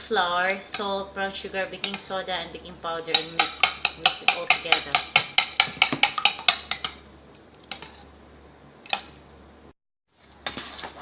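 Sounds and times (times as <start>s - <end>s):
utensil beating against bowl: 3.0s - 7.1s
knocks against bowl: 3.2s - 6.9s.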